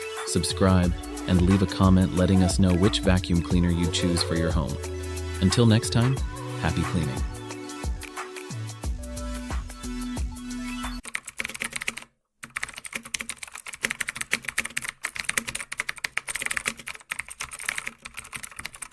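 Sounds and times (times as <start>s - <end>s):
background music: 0.0s - 11.0s
rapid keyboard typing clicks: 11.0s - 18.9s.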